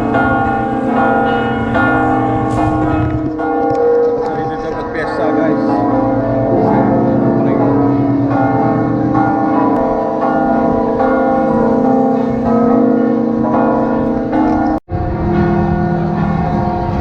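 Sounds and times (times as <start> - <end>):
church bells ringing: 0.0 - 17.0.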